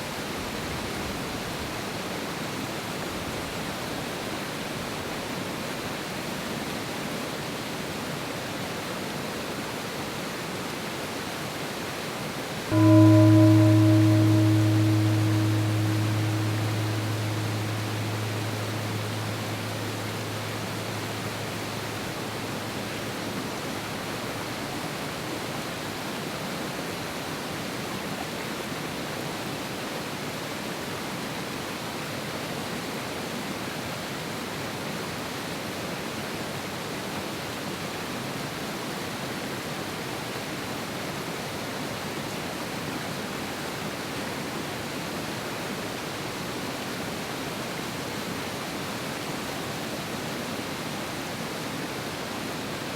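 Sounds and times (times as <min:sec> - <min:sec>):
low drone: 0:12.7 - 0:23.5.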